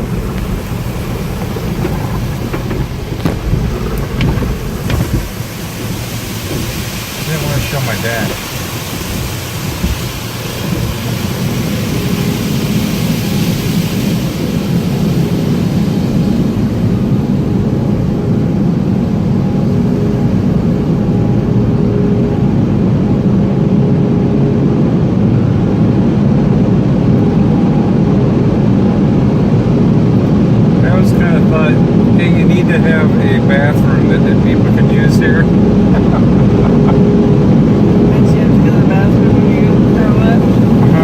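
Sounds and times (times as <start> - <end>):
water spray hissing on car: 0.0 - 17.6, 30.9 - 41.0
drying blowers droning: 0.0 - 41.0.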